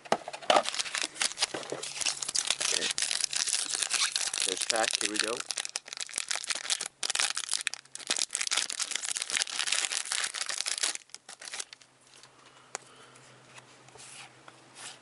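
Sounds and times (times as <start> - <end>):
rustling of cards: 0.5 - 7.4
plastic wrapper tearing and crinkling: 0.5 - 11.9.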